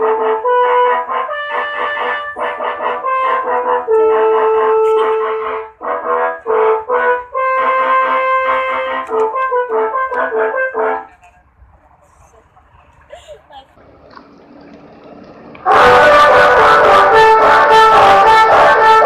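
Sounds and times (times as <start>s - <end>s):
bus air horn melody: 0.0s - 11.4s, 15.6s - 19.0s.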